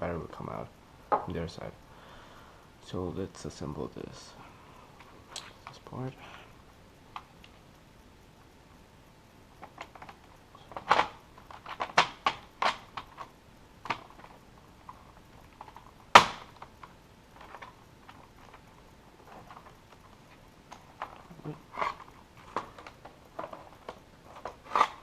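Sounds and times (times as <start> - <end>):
plastic parts clicking and knocking: 9.6 - 25.0.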